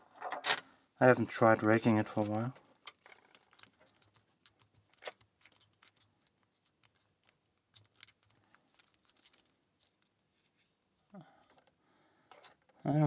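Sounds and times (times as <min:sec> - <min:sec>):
lock pick clicking and scraping: 0:01.8 - 0:10.3, 0:11.4 - 0:12.8.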